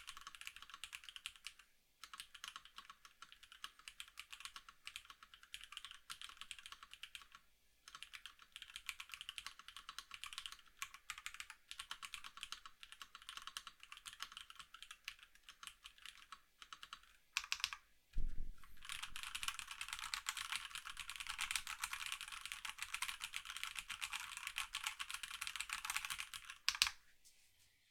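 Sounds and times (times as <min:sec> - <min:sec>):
deep thump: 0:18.2 - 0:18.6.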